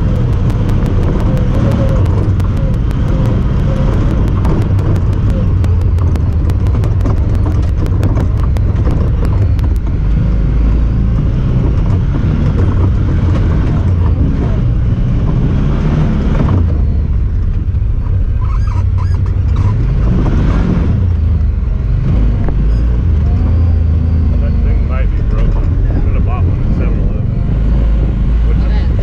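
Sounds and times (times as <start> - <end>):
rapid clicking: 0.0 - 10.2
engine low rumble: 0.0 - 29.0
road and driving noise: 0.0 - 29.0.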